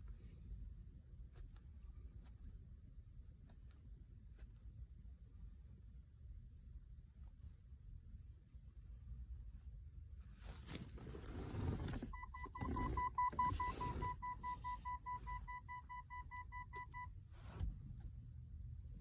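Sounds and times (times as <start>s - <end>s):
rustling handling noise: 10.2s - 14.2s.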